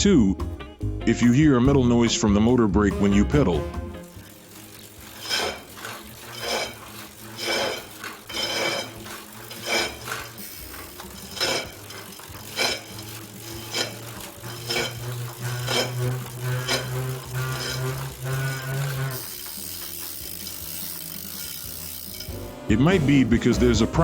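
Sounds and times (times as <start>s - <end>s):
metallic scraping of trainer brake: 4.0s - 22.5s.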